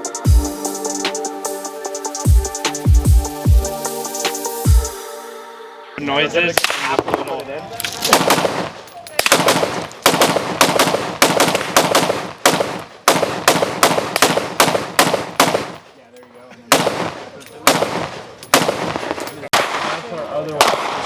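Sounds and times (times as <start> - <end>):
gunshots with echo: 6.6 - 15.8, 16.7 - 21.0.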